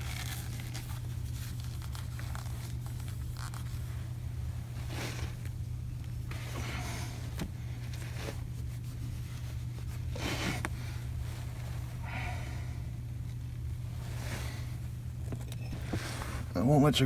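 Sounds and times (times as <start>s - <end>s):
steady low hum: 0.0s - 17.0s
person breathing heavily: 12.0s - 13.0s.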